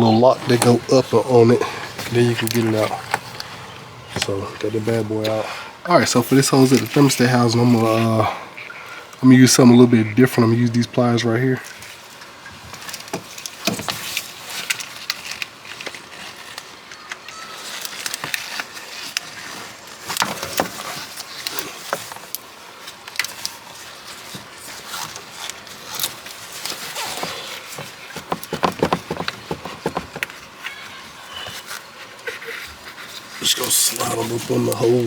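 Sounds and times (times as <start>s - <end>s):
tool scrapes and handling: 26.7s - 30.4s.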